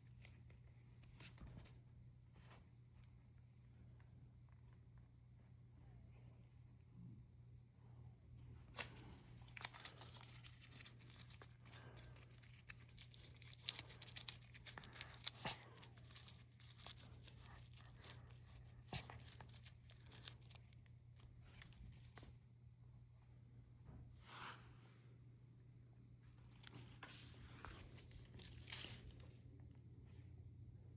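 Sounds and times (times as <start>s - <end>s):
crinkling crackles: 8.6s - 22.4s, 26.4s - 29.7s.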